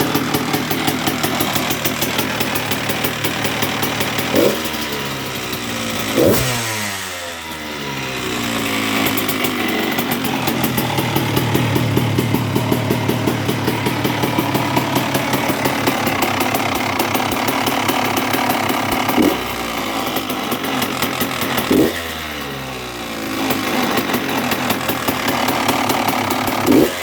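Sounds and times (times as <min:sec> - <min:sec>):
two-stroke motorcycle engine: 0:00.0 - 0:27.0
low growling vibration: 0:10.2 - 0:15.2.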